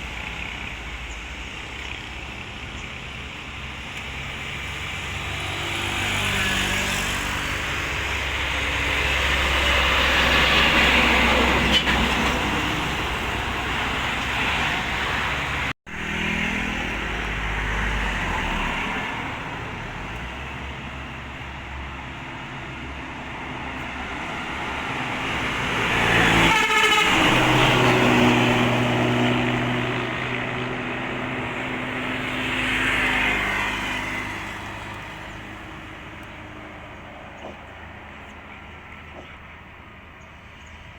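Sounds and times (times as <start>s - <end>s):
buses passing on road: 0.0s - 40.9s
bus horn tooting rapidly: 26.1s - 28.4s.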